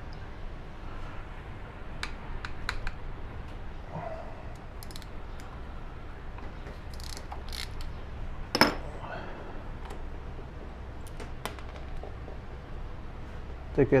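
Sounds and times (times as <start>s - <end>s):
metallic clicks and taps: 2.0s - 3.0s.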